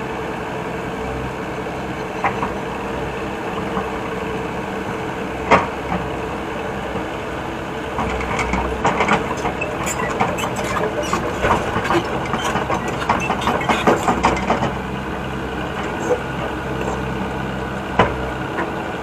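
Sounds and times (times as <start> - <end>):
excavator diesel engine running: 0.0 - 19.0
clattering knocks: 8.0 - 14.8.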